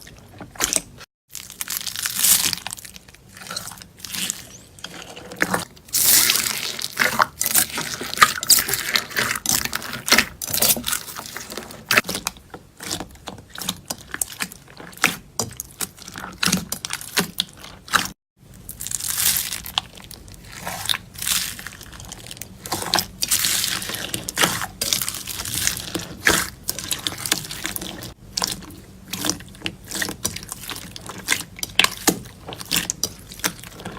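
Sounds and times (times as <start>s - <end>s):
slime squishing with wet clicks: 6.5s - 18.1s, 19.0s - 33.9s.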